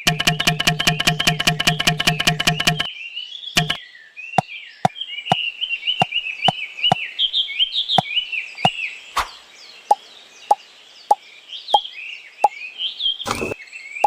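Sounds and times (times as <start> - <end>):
sharp taps: 0.0 - 2.9, 3.6 - 3.8.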